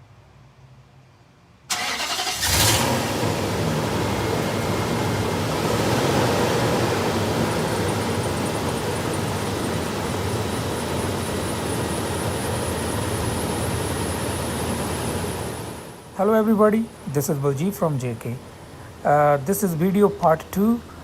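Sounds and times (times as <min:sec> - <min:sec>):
engine starting and running: 0:01.7 - 0:16.1.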